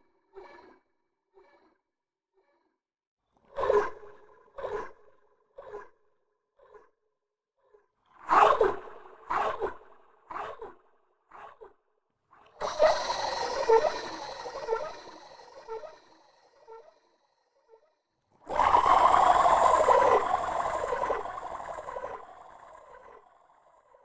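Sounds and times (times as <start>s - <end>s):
eerie sliding tone effect: 12.6s - 16.8s, 18.5s - 23.8s
eerie pulsing sound effect: 12.6s - 17.0s, 18.5s - 24.0s.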